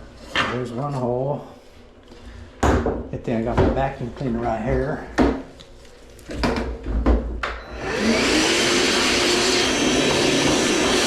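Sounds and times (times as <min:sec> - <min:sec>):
vacuum cleaner running: 0:07.6 - 0:11.0.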